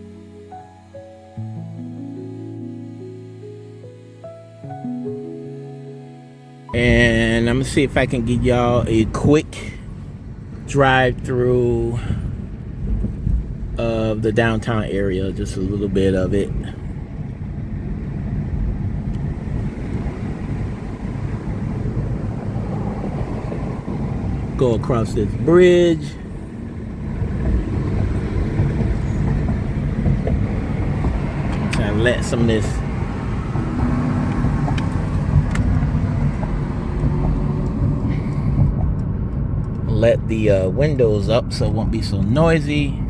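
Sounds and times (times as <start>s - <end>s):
car engine and road noise: 0.0s - 43.0s
person speaking: 6.7s - 9.8s, 24.6s - 26.3s, 31.7s - 32.9s
wind through open windows: 6.8s - 43.0s.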